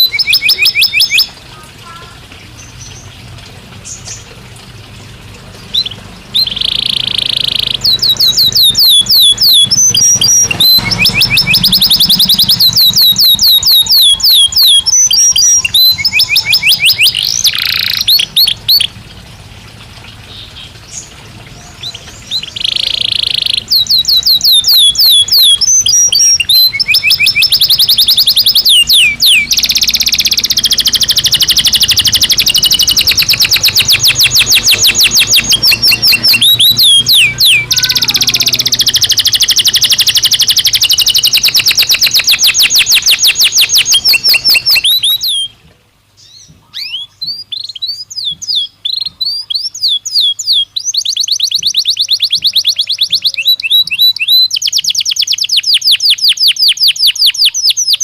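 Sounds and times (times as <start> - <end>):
canary singing fast trills: 0.0 - 4.4, 5.5 - 19.1, 20.2 - 45.6, 46.2 - 58.0.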